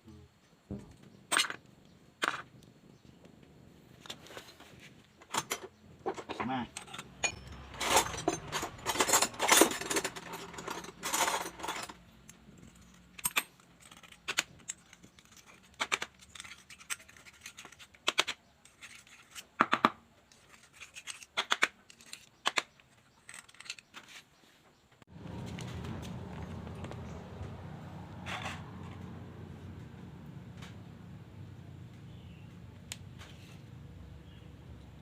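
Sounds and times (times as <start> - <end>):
metal parts scraping and rattling: 1.3 - 1.6, 4.0 - 19.6, 20.3 - 24.4, 28.2 - 29.0.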